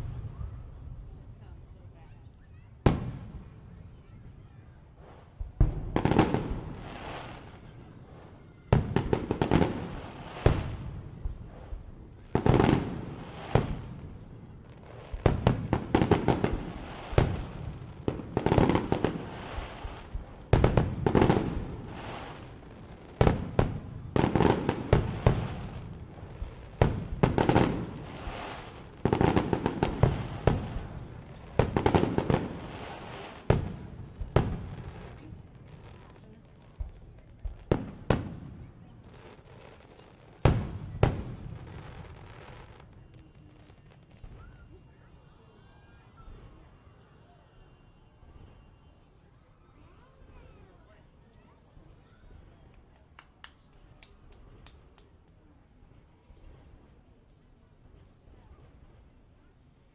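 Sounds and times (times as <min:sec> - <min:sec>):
fireworks bursting with echo: 0:00.0 - 0:45.3.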